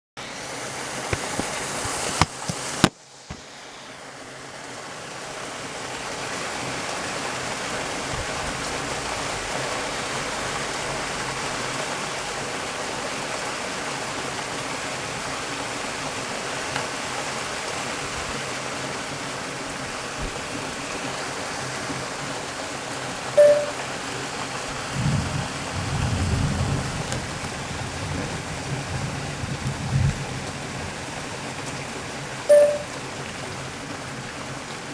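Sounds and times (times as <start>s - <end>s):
heavy rain pouring: 0.2s - 34.9s
short tone: 23.4s - 23.8s, 32.5s - 32.9s.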